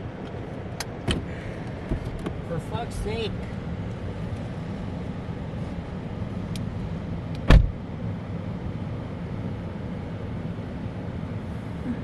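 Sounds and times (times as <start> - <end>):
car engine humming: 0.0 - 12.0
car door shutting: 1.0 - 2.4, 7.4 - 7.8.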